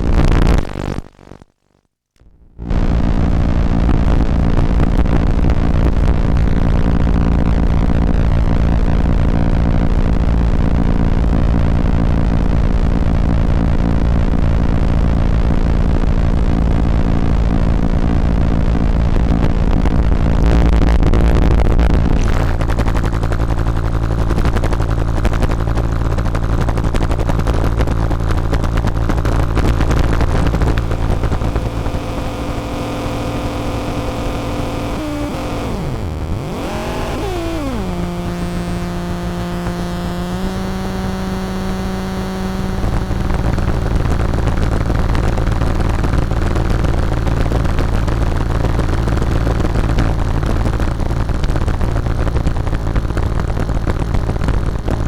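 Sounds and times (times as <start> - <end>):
distorted synthesizer noise roar: 0.0 - 1.5, 2.2 - 55.0
steady synth tones: 30.0 - 44.8.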